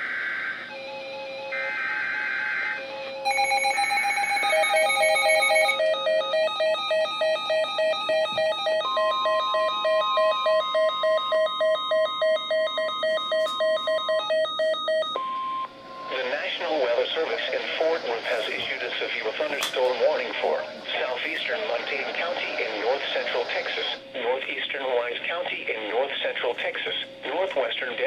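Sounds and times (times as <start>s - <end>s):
steady high warning tone: 0.0s - 19.5s.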